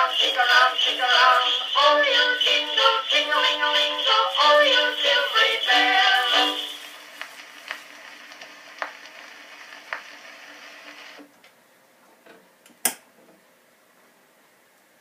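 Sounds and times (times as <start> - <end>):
phonograph music: 0.0 - 9.4
phonograph surface hiss and ticks: 0.0 - 15.0.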